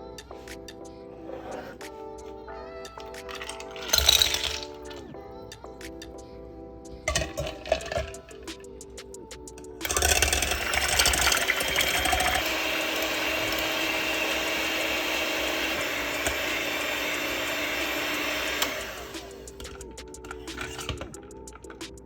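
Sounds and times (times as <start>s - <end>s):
electric hand mixer whirring: 3.0s - 5.1s, 7.1s - 8.6s, 9.8s - 21.7s.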